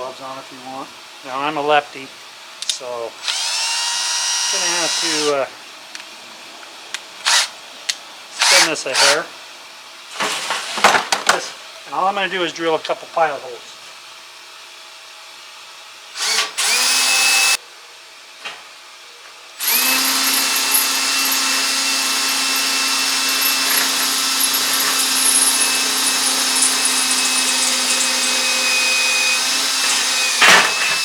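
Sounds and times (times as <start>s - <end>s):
electric drill drilling steel: 3.2s - 5.3s, 7.3s - 7.5s, 8.4s - 9.2s, 16.1s - 17.6s, 19.6s - 31.0s.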